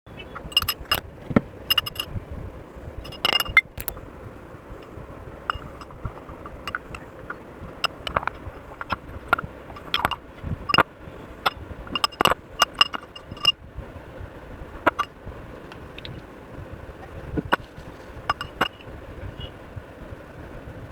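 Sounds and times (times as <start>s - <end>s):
utensils clicking and scraping: 3.1s - 4.0s, 5.5s - 10.9s, 17.4s - 18.9s.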